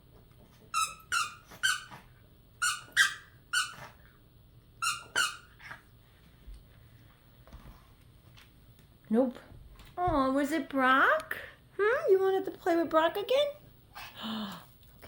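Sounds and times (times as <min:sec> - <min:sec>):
dog toy squeaker squeaks: 0:00.7 - 0:01.9, 0:02.6 - 0:03.8, 0:04.8 - 0:05.5.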